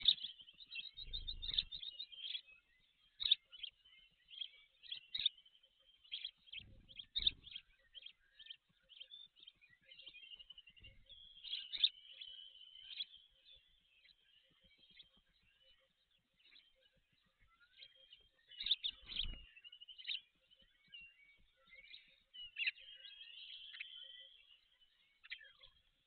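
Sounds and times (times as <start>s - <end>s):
birds chirping and trilling: 0.0s - 26.0s.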